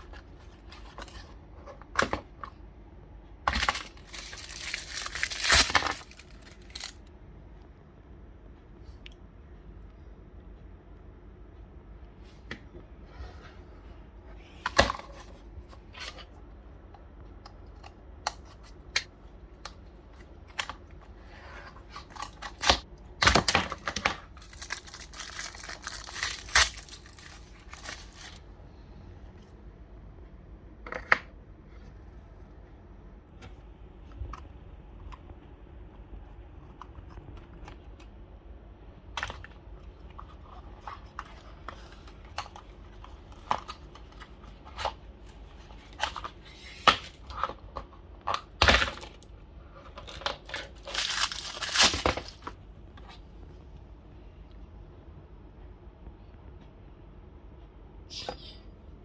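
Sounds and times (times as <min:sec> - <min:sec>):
wrapper tearing and crinkling: 0:03.5 - 0:07.0, 0:23.4 - 0:28.4, 0:50.0 - 0:52.6.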